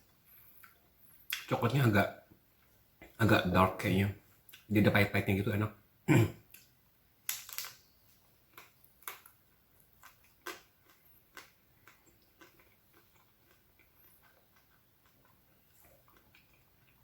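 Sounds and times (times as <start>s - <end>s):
chewing crunches: 8.4s - 17.0s.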